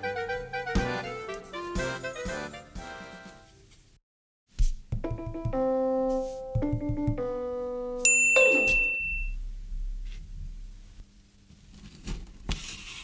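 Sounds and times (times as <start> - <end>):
held keyboard notes: 0.0 - 3.5, 5.0 - 9.3
bright chime: 8.1 - 9.4.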